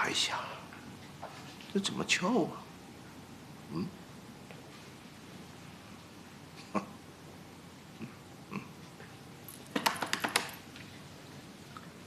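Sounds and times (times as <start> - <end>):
quick run of sharp clicks: 9.7 - 10.6.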